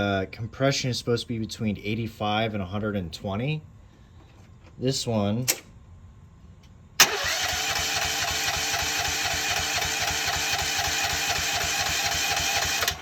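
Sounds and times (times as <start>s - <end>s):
engine cranking without firing: 7.0s - 13.0s.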